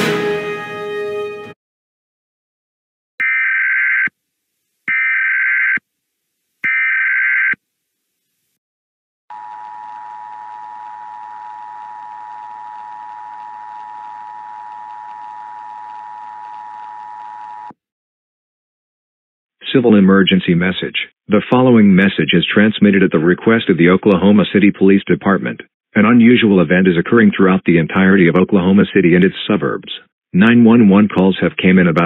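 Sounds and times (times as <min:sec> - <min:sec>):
music: 0:00.0 - 0:01.6.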